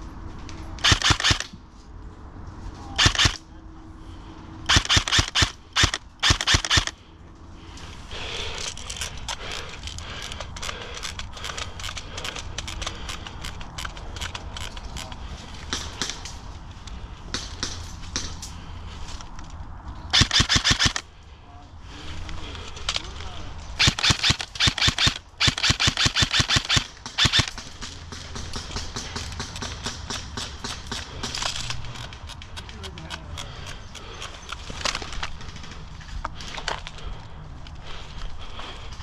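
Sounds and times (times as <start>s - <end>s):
airsoft rifle full-auto bursts: 0.8s - 1.4s, 3.0s - 3.4s, 4.7s - 7.0s, 20.1s - 21.0s, 23.8s - 27.6s.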